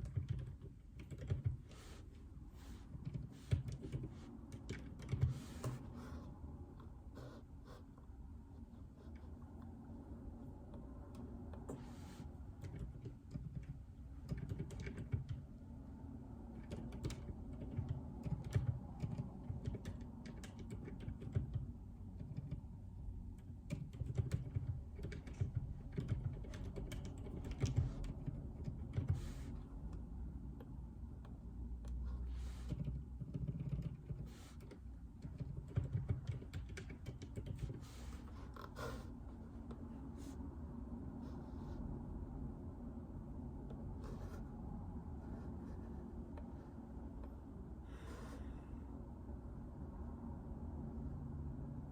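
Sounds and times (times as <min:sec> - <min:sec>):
soft keyboard typing: 0:00.0 - 0:02.0, 0:02.8 - 0:06.0, 0:10.6 - 0:15.6, 0:16.5 - 0:39.0.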